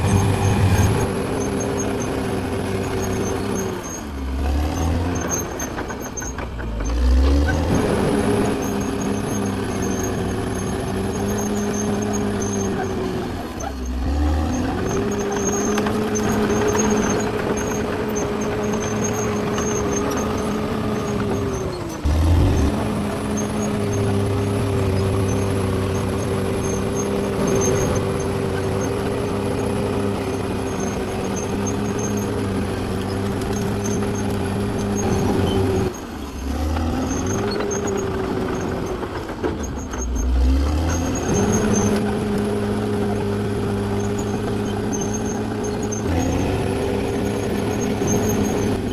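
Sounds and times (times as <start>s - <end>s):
model bulldozer mechanical whine: 0.0s - 48.9s.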